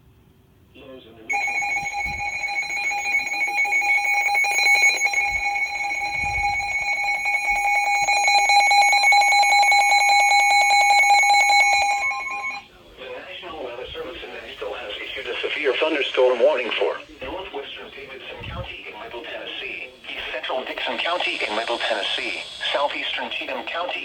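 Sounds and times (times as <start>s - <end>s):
electronic alert tone: 1.3s - 12.6s.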